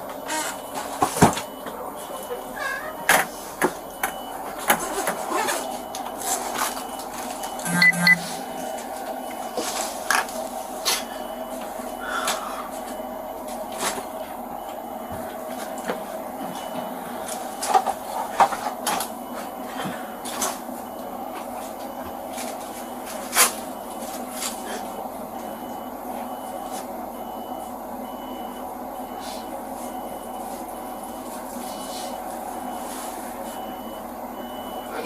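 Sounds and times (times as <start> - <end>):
vehicle backup alarm beeping: 0.0 - 35.0.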